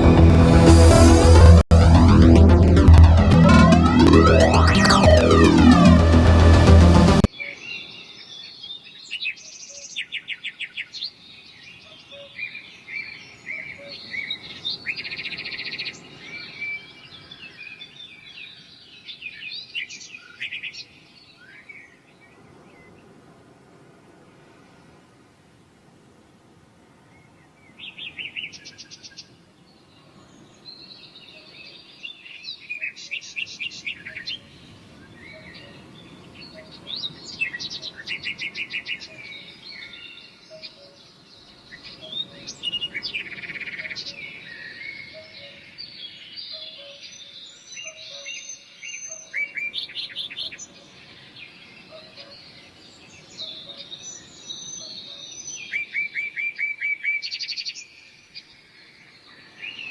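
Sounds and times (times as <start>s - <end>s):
birds singing and chirping: 31.2s - 58.0s.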